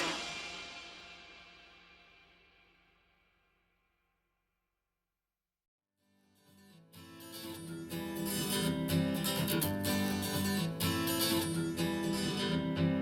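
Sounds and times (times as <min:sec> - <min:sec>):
pop song with acoustic guitar: 0:06.7 - 0:13.0.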